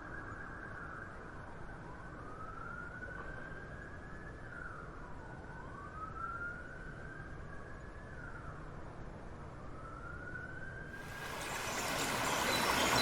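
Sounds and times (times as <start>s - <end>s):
city traffic hum: 11.0s - 13.0s
emergency siren wailing: 11.0s - 13.0s.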